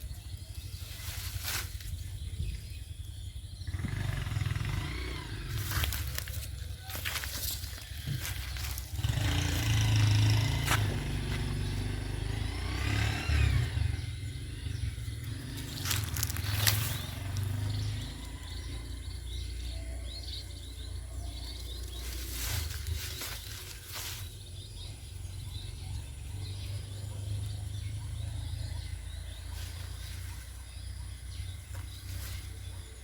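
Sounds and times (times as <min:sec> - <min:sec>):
small birds chirping: 0:00.0 - 0:33.0
rustling bursts: 0:15.6 - 0:17.7, 0:21.8 - 0:24.4.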